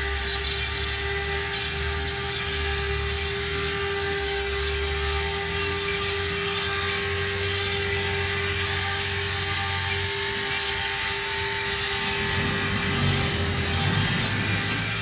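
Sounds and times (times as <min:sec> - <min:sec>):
engraving machine spindle whine: 0:00.0 - 0:15.0
low rumble: 0:11.6 - 0:15.0.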